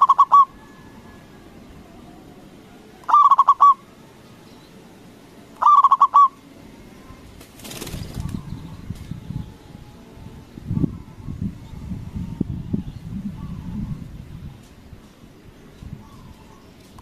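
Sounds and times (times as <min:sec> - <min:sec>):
dove cooing: 0:00.0 - 0:04.2, 0:05.6 - 0:06.4.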